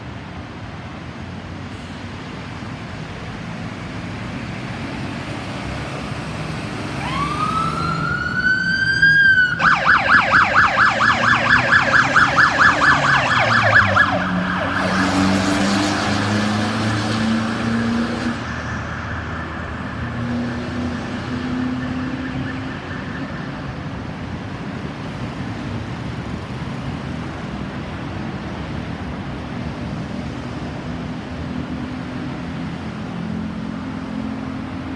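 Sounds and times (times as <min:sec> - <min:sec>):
road traffic noise: 0:00.0 - 0:34.9
ambulance siren: 0:05.8 - 0:25.3.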